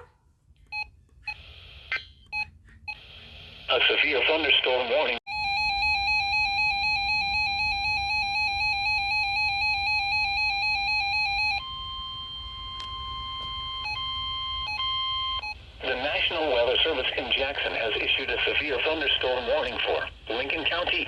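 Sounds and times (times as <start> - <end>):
steady alarm tone: 5.3 - 16.5.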